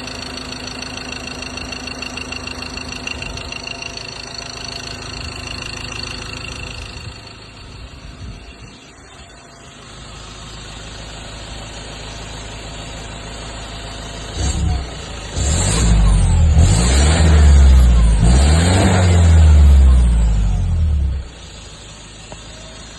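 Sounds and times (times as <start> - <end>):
diesel engine idling and revving: 0.0 - 22.9.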